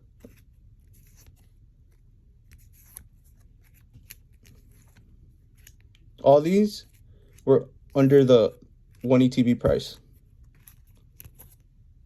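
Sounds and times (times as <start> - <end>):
trading cards clicking and scraping: 0.0 - 6.1, 8.9 - 11.7
low room hum: 0.0 - 12.0.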